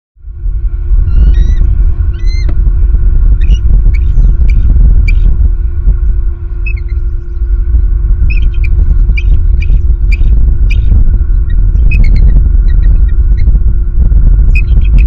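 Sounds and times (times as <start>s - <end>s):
strong wind buffeting microphone: 0.2s - 15.0s
birds squeaky calls: 1.1s - 2.5s, 3.4s - 5.3s, 6.5s - 7.6s, 8.2s - 13.6s, 14.5s - 15.0s.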